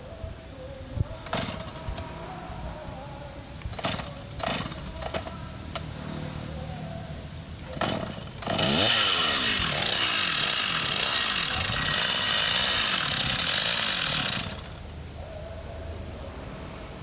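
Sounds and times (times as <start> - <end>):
chainsaw engine: 1.2 - 2.0, 3.7 - 5.4, 7.7 - 14.8.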